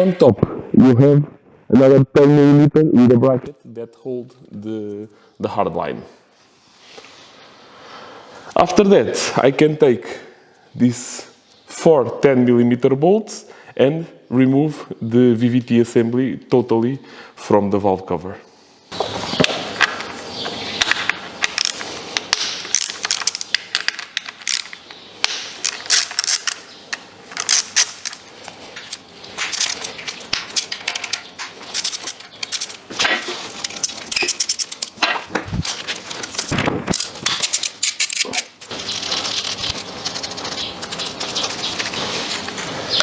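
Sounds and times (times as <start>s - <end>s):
ratchet wrench clicking: 25.7s - 26.6s, 28.8s - 32.8s.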